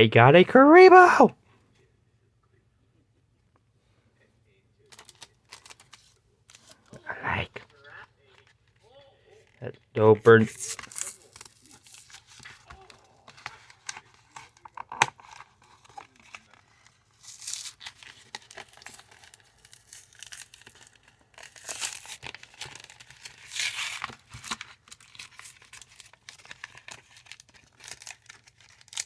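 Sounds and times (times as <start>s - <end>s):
foil wrapper crinkling and tearing: 4.9s - 7.0s, 10.4s - 29.0s.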